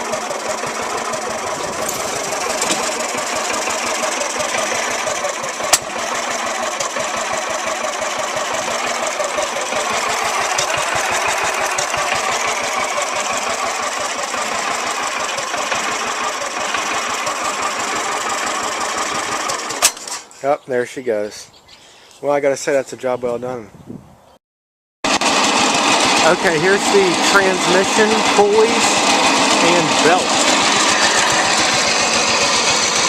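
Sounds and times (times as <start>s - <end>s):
lawn tractor engine idling: 0.0s - 20.4s, 25.1s - 33.0s.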